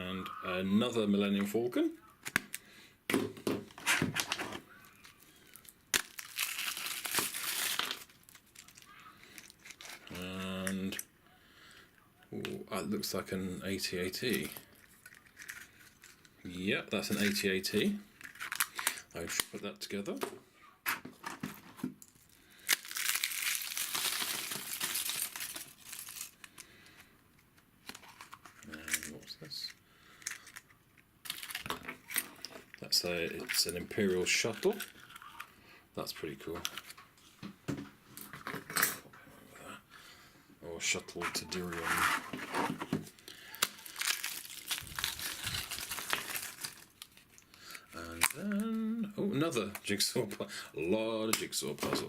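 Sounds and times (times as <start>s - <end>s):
foil crinkling: 4.2s - 10.2s, 18.1s - 19.5s, 22.0s - 26.7s, 30.2s - 35.5s, 41.5s - 48.7s
chocolate shell cracking: 4.9s - 10.1s, 18.2s - 19.5s, 22.0s - 26.7s, 43.3s - 48.4s.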